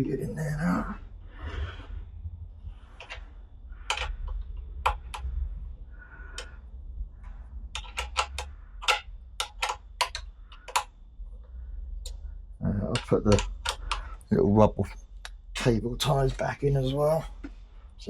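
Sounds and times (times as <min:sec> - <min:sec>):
steady low hum: 0:00.0 - 0:18.0
sharp small clicks and taps: 0:03.8 - 0:05.4, 0:07.7 - 0:11.0, 0:12.9 - 0:14.3.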